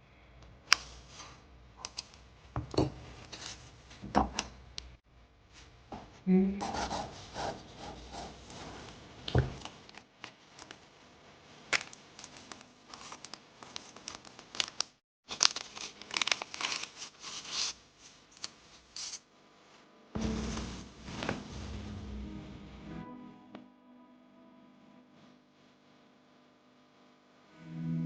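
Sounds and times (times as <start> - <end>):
paper crinkling and tearing: 11.7 - 19.2.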